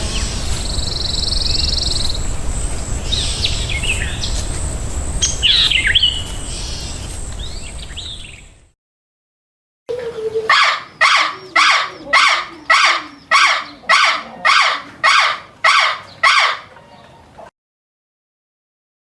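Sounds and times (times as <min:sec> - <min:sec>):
bird harsh call: 0:10.0 - 0:16.8.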